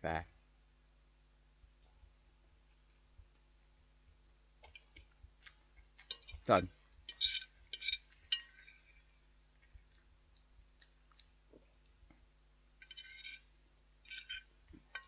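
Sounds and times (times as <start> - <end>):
fork clinking on a plate: 6.0 - 6.4, 7.1 - 8.8, 12.8 - 13.4, 14.1 - 15.0.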